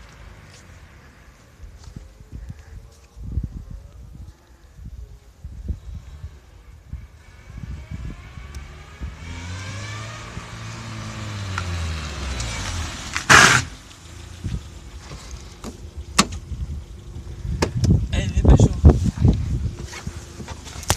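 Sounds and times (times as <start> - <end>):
motor vehicle passing by: 7.2 - 14.6.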